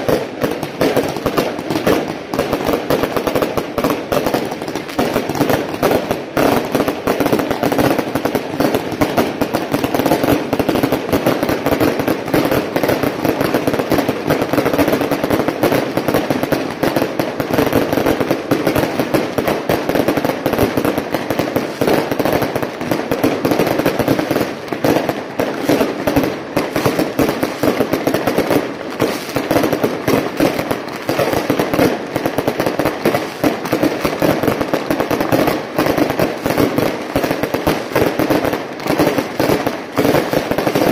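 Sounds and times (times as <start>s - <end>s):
firecrackers crackling: 0.0s - 40.9s.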